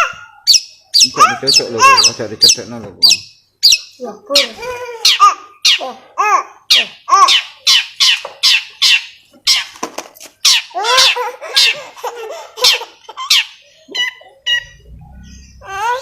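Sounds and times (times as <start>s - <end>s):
bird chattering calls: 0.5s - 5.9s, 6.7s - 9.8s.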